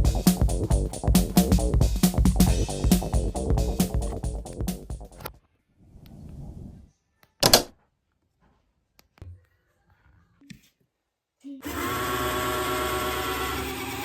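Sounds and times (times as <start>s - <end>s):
small electric motor humming: 11.6s - 14.0s.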